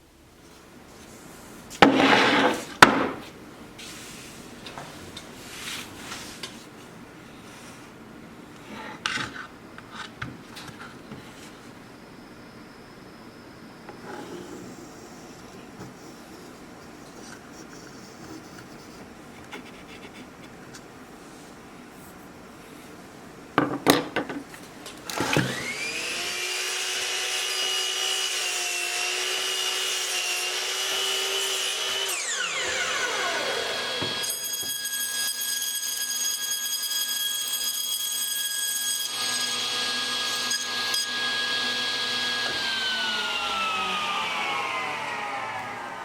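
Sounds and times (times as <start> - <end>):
power carving tool whining: 25.1 - 46.0.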